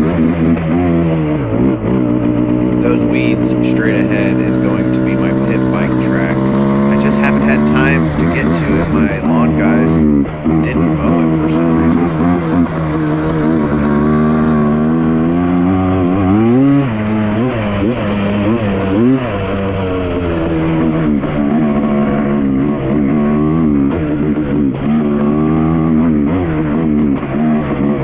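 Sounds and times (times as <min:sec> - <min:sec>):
two-stroke engine revving: 0:00.0 - 0:27.9.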